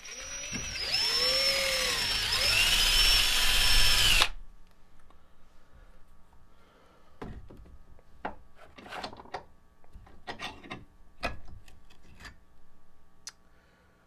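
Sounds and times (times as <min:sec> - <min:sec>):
tools scraping and knocking on bench: 0:07.2 - 0:12.4.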